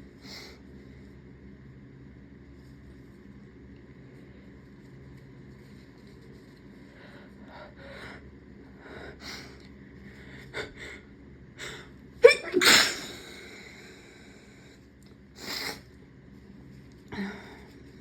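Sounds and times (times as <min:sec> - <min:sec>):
person sneezing: 0:12.2 - 0:13.5.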